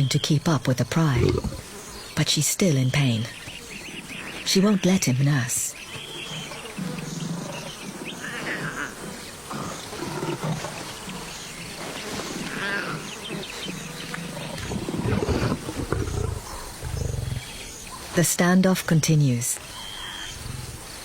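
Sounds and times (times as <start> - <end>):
insects buzzing: 0.0 - 21.0
lions growling and grunting: 1.0 - 1.8, 5.9 - 17.8.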